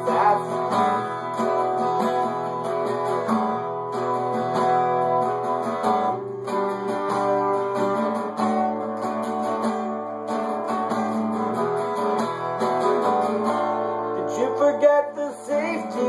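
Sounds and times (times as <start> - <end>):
person singing: 0.0 - 1.6, 14.2 - 16.0
strummed acoustic guitar: 0.0 - 16.0.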